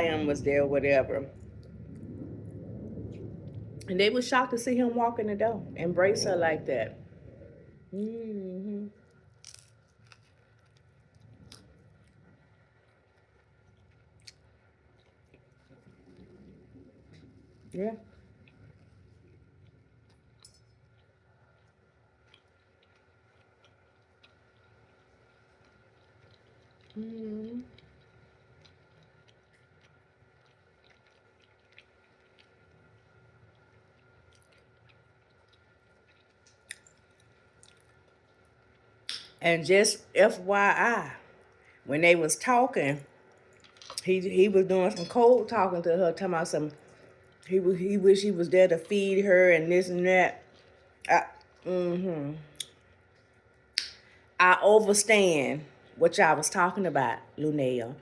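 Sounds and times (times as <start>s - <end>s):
faint chewing: 6.9s - 39.4s, 43.0s - 44.2s, 50.3s - 54.4s
mouth clicks and crunches: 8.9s - 39.4s, 43.1s - 44.1s, 52.4s - 54.2s
mouth clicks and smacks: 39.1s - 39.4s, 43.5s - 44.1s, 52.6s - 54.2s.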